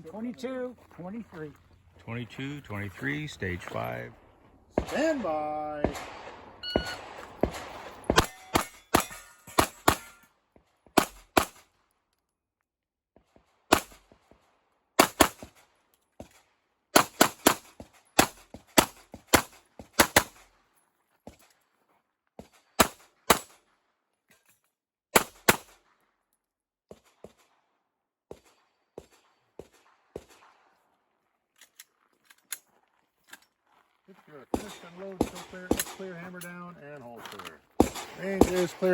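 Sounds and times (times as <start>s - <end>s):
pistol shots: 4.7s - 10.2s, 11.0s - 11.7s, 13.7s - 14.1s, 15.0s - 15.6s, 17.0s - 20.4s, 22.4s - 23.6s, 25.1s - 25.8s, 28.3s - 30.7s, 34.5s - 36.4s, 37.8s - 38.9s.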